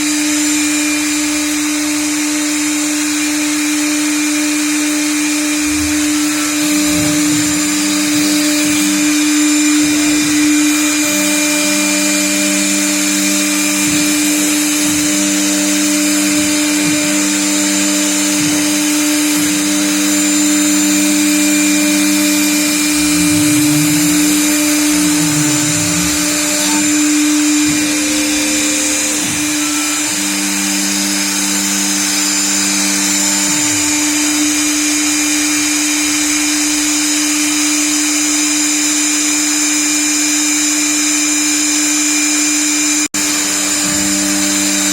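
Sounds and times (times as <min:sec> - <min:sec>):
spindle motor whining: 0:00.0 - 0:37.4, 0:42.9 - 0:44.9
stepper motors gliding tone: 0:05.2 - 0:35.0.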